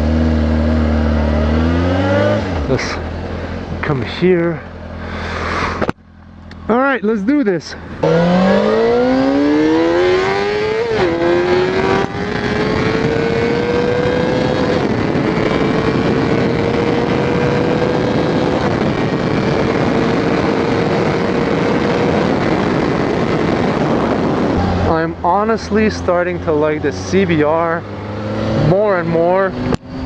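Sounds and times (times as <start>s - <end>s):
motorcycle engine accelerating: 0.0s - 30.0s
wind on microphone: 8.3s - 25.5s.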